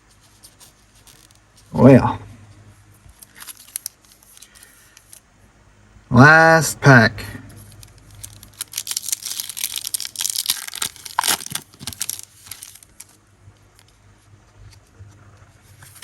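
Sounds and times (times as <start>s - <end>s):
foil wrapper tearing and crinkling: 0.5s - 1.5s, 3.1s - 5.2s, 7.6s - 13.2s.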